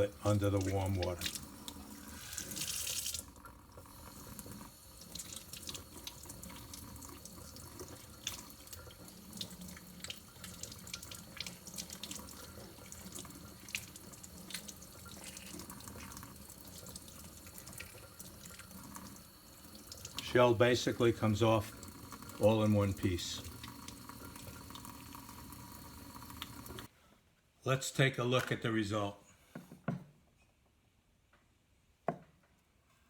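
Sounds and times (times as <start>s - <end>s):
small clicks and splashes: 2.4s - 18.7s.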